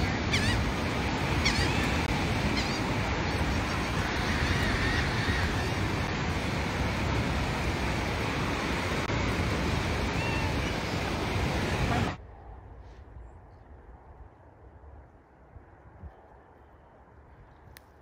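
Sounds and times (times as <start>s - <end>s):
surf: 0.0s - 12.2s
wind: 0.0s - 18.0s
wind rumble on microphone: 0.0s - 18.0s.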